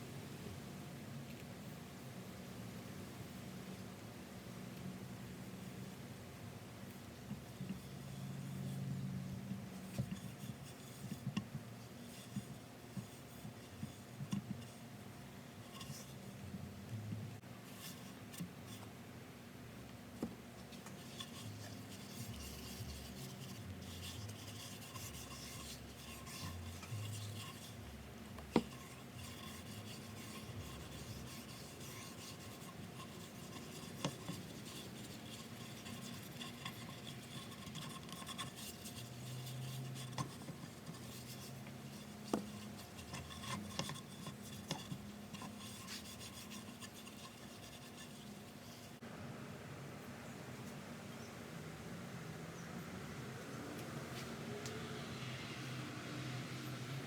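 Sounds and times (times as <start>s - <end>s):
scratchy rubbing on wood: 21.0s - 49.0s.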